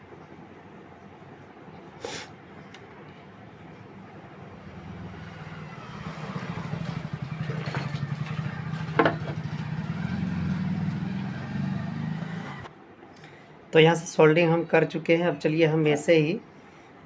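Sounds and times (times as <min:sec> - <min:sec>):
low pulsing engine drone: 0:03.3 - 0:12.7.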